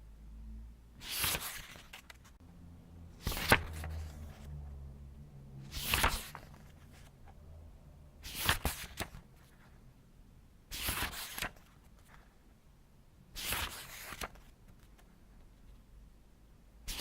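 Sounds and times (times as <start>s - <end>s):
book pages turning: 1.0s - 2.3s, 3.2s - 4.6s, 5.7s - 7.4s, 8.2s - 9.8s, 10.7s - 12.2s, 13.4s - 15.1s.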